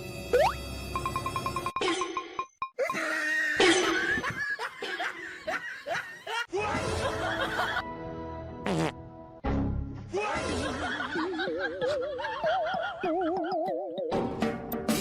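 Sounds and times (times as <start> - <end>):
person laughing: 2.8 - 7.8, 10.3 - 13.9
background music: 6.5 - 15.0.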